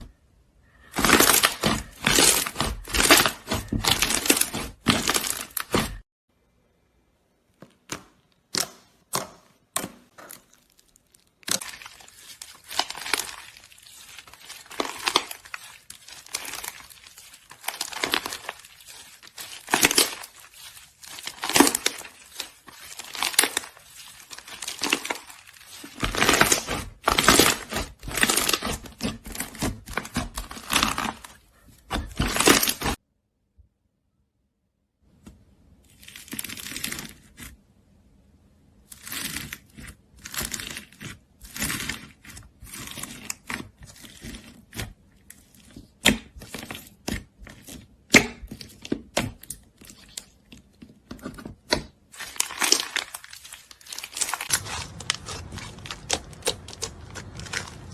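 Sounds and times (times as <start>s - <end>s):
slime crackling: 0.9s - 6.0s, 10.1s - 33.0s, 52.1s - 57.9s.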